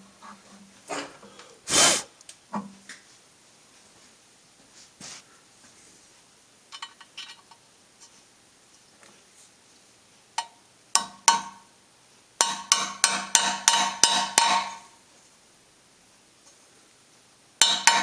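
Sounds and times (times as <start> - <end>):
hammer striking metal: 10.4 - 11.7, 12.4 - 14.9, 17.6 - 18.0.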